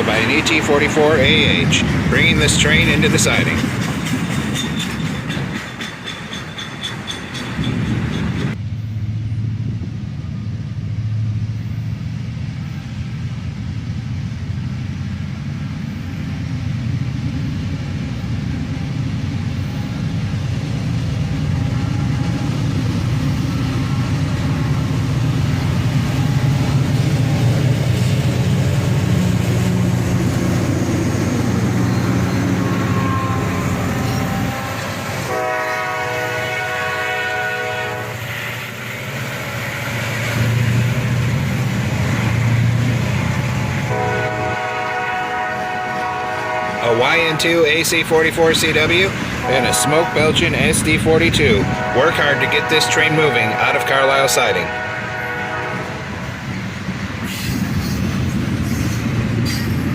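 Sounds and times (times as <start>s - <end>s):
freight train rumbling: 0.0s - 59.9s
locomotive air horn: 32.6s - 38.6s, 43.7s - 47.7s, 49.4s - 56.2s.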